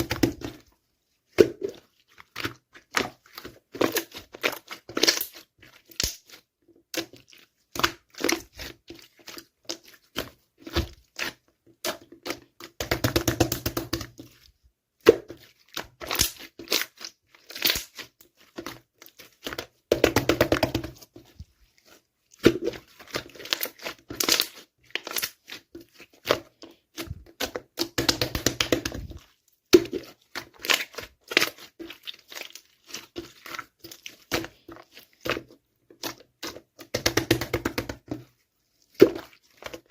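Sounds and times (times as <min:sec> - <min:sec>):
slime crackling: 0:15.2 - 0:37.8.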